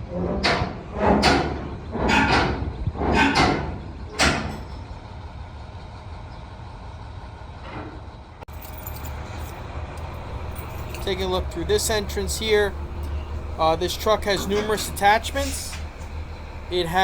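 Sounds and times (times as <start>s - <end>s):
truck idling: 8.2s - 17.0s.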